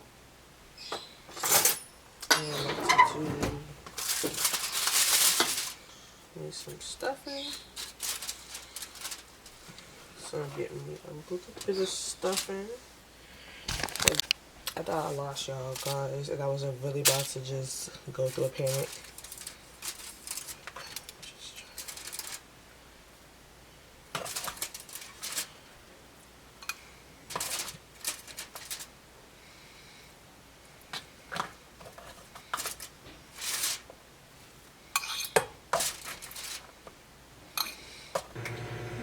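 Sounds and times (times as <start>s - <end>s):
cutlery clinking against dishes: 35.0s - 36.0s.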